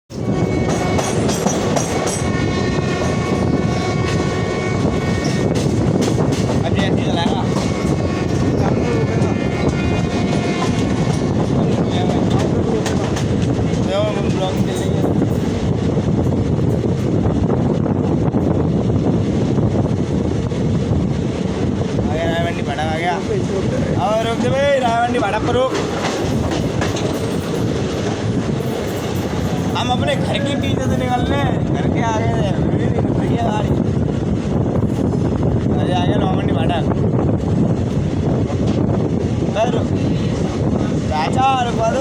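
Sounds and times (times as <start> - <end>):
train wheels clacking: 0.1 - 17.2, 24.0 - 31.5
train rumble: 0.1 - 42.0
wind buffeting microphone: 0.1 - 42.0.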